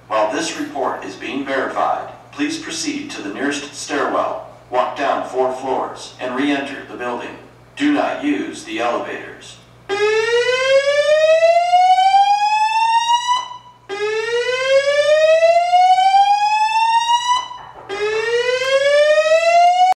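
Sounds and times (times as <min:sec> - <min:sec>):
fire alarm whoop tone: 0:09.9 - 0:20.0.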